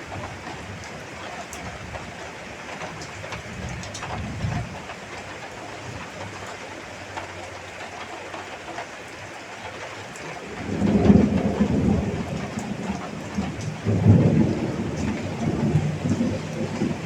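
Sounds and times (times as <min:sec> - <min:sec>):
heavy rain falling: 0:00.0 - 0:17.0
distant thunder rumble: 0:10.3 - 0:17.0.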